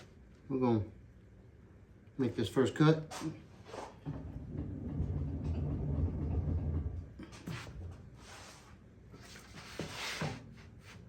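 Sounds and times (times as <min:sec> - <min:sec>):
brief scraping sounds: 0:07.3 - 0:11.0.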